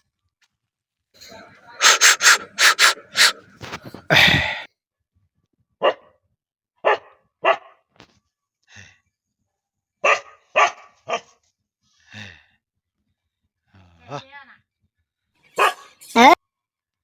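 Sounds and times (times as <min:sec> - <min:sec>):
dog barking: 0:01.2 - 0:04.5, 0:05.8 - 0:06.1, 0:06.8 - 0:07.8, 0:10.0 - 0:11.4, 0:15.6 - 0:16.0.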